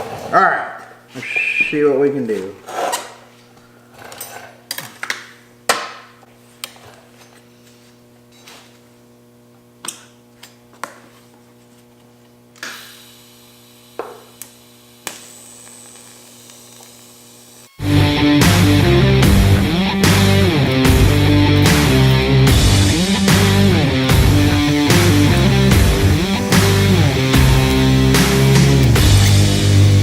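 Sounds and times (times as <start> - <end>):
electrical hum: 13.1 - 30.0.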